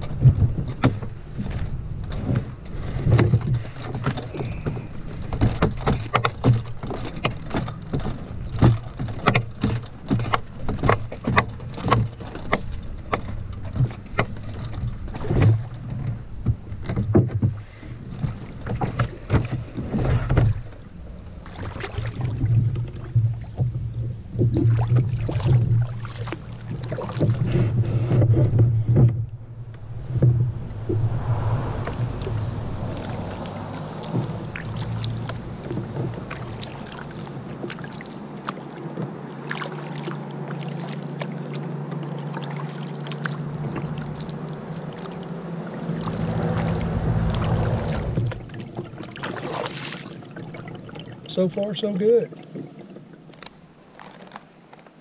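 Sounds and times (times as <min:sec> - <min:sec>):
paddle knocks and splashes: 0:00.0 - 0:55.0
low rumble: 0:27.7 - 0:37.0, 0:43.5 - 0:49.2.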